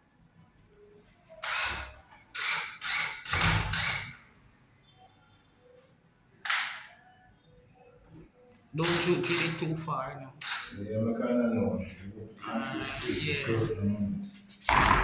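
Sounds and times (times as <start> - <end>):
power drill bursts: 1.4 - 4.2.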